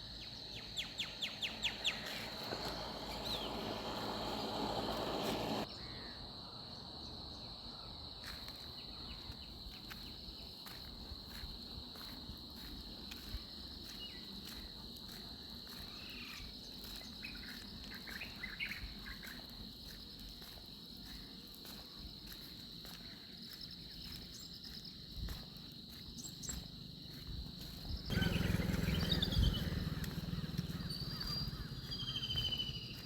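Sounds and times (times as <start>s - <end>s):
high-pitched insect chorus: 0.0s - 33.0s
short insect chirps: 26.1s - 33.0s.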